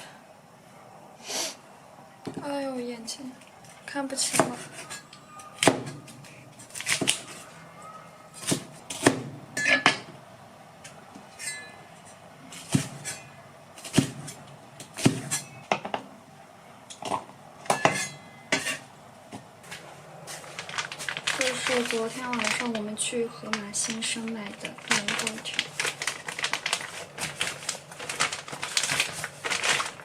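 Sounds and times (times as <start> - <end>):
utensils and dishes clinking: 9.6 - 10.1, 11.3 - 13.3, 16.9 - 18.8.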